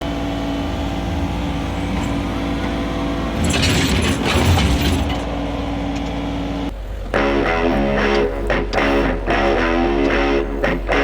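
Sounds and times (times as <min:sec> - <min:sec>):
excavator engine running: 0:00.0 - 0:11.0.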